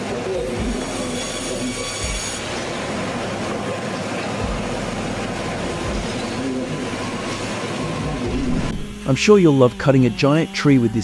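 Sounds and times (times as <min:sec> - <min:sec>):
power saw cutting wood: 0:00.0 - 0:11.0
high-pitched tones: 0:03.4 - 0:09.8.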